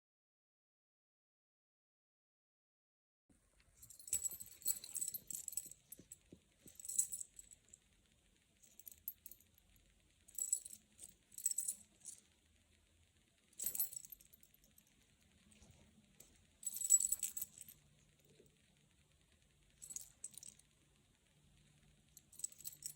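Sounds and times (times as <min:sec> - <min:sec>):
chain jingling and clinking: 0:03.8 - 0:07.6, 0:08.6 - 0:09.4, 0:10.3 - 0:12.2, 0:13.6 - 0:14.8, 0:16.6 - 0:17.8, 0:19.8 - 0:20.6, 0:22.2 - 0:22.9.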